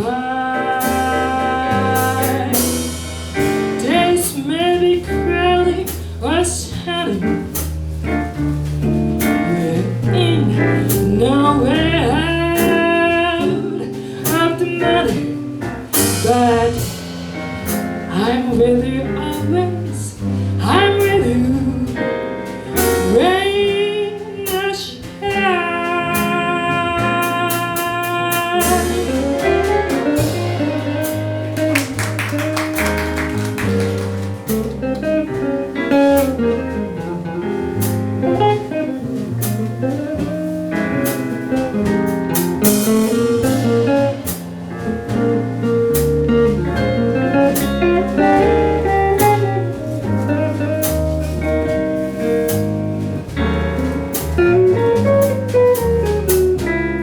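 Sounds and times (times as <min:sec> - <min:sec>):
drums with ride cymbal: 0:00.0 - 0:57.0
piano chords: 0:00.0 - 0:57.0
walking bass: 0:00.0 - 0:57.0
guitar solo: 0:46.3 - 0:50.4.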